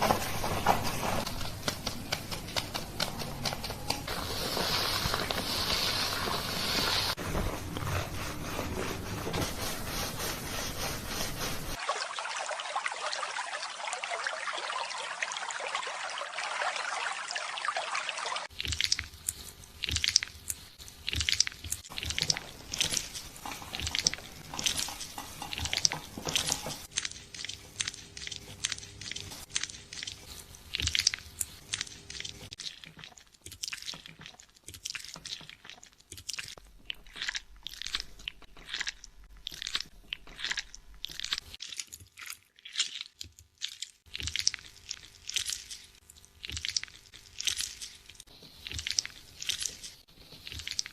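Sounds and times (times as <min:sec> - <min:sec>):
fingers scrubbing lathered hair: 0:00.0 - 0:11.9, 0:18.4 - 0:42.0.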